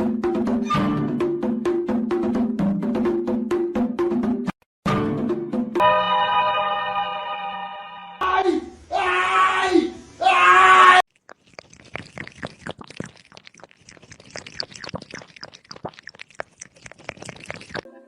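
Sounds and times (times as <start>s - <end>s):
cat chewing with soft crunches: 11.1s - 17.9s.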